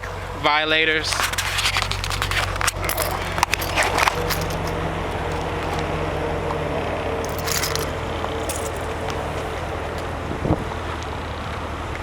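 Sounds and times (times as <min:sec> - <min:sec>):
car engine idling: 0:00.0 - 0:12.0
light rattle: 0:07.2 - 0:09.7.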